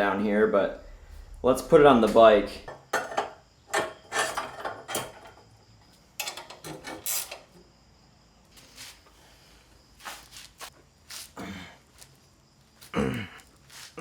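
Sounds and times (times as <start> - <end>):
metal bike parts clunking: 2.1 - 7.6.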